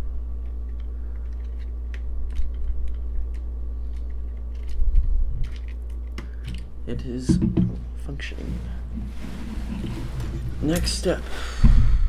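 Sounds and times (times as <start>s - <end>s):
steady low hum: 0.0s - 12.0s
plastic camera parts clicking: 0.7s - 6.6s.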